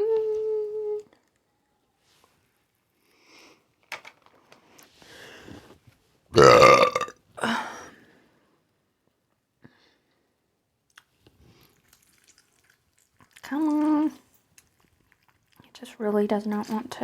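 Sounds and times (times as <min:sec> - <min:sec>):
person burping: 0:06.4 - 0:07.7
eating clicks and rustles: 0:10.9 - 0:17.0.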